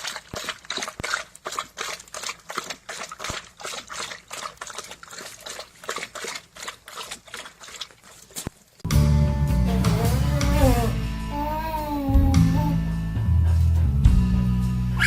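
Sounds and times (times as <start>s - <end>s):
wet splashing: 0.0s - 8.9s.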